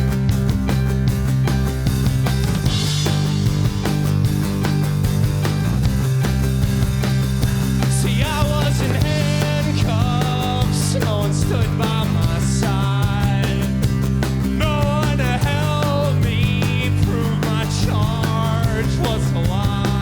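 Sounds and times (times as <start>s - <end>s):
live rock band playing: 0.0s - 20.0s
person singing lead vocal: 7.9s - 13.8s, 14.5s - 20.0s.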